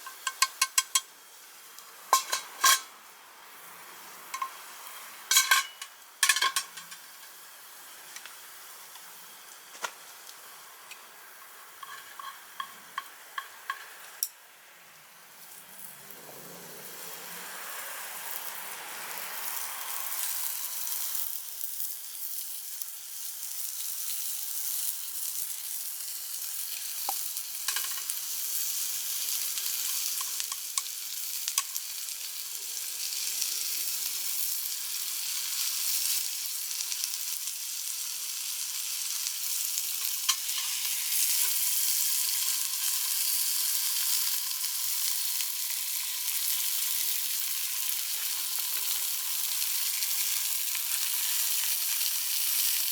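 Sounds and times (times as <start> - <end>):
meat sizzling over a campfire: 0.0 - 52.9.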